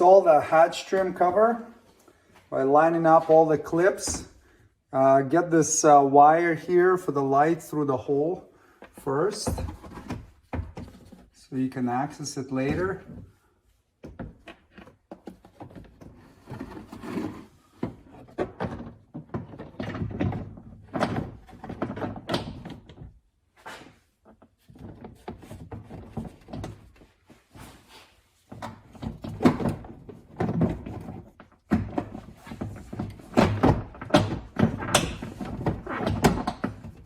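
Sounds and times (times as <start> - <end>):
plastic knocking and rubbing: 24.2 - 27.4, 28.5 - 37.0.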